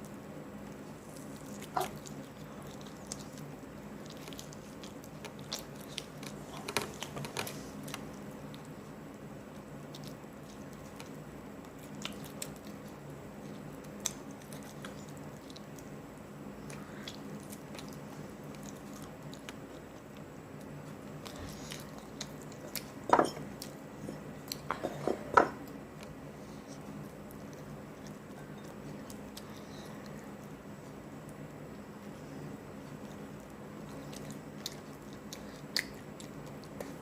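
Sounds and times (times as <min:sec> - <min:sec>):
chewing and wet mouth sounds: 0:00.0 - 0:25.0, 0:25.6 - 0:37.0
faint steady hum: 0:00.0 - 0:37.0.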